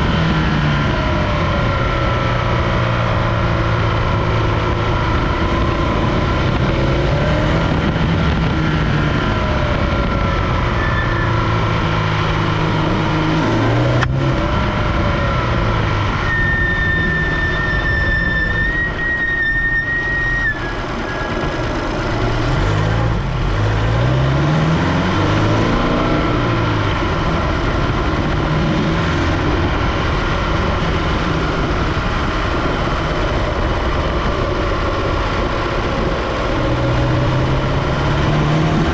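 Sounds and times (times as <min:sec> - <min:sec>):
car engine revving: 0:00.0 - 0:38.9
high steady whistle: 0:16.2 - 0:21.3.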